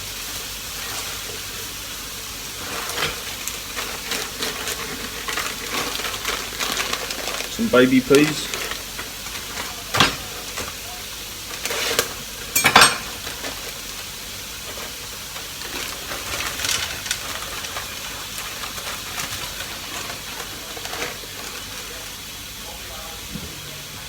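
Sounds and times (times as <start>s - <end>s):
food sizzling in a frying pan: 0.0s - 24.0s
stirring scraping clatters: 2.6s - 7.6s.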